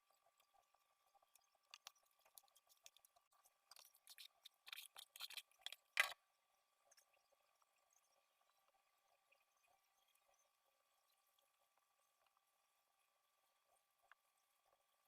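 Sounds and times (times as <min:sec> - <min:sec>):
faint steady hum: 0:00.0 - 0:15.0
dough squishing and scraping: 0:01.6 - 0:06.2.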